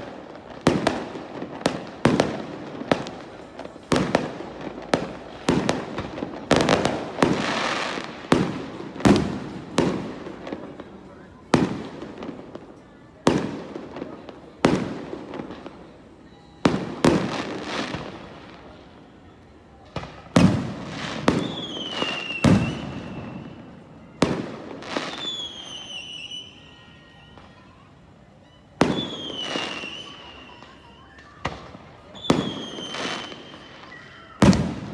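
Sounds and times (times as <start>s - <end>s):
fireworks bangs: 0.0s - 34.9s
whistling fireworks: 0.0s - 34.9s.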